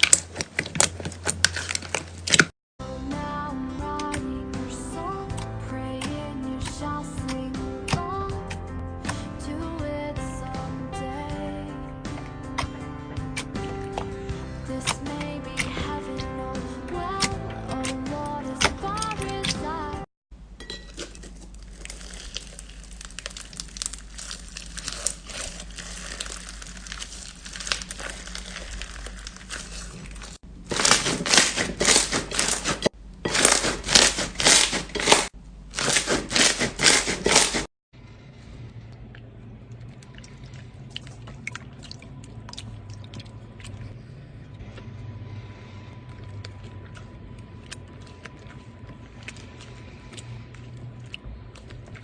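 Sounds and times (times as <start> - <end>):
slime crackling and popping: 21.0 - 37.6.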